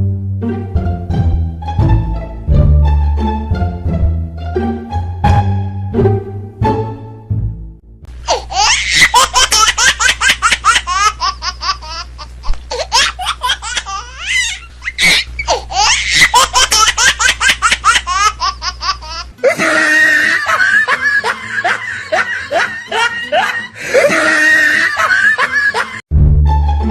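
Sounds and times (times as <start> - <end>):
plucked string music: 0.0 - 8.1, 26.1 - 26.9
person laughing hard: 8.3 - 26.0.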